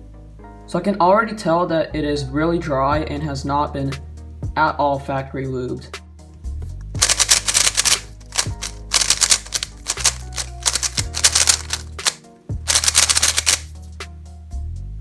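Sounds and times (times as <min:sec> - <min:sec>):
background music: 0:00.0 - 0:15.0
plastic puzzle cube clacking: 0:07.0 - 0:13.7.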